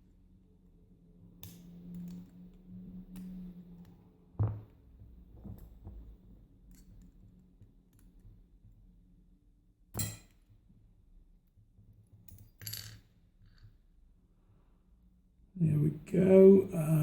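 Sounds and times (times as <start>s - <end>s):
dull knock: 4.4s - 4.7s.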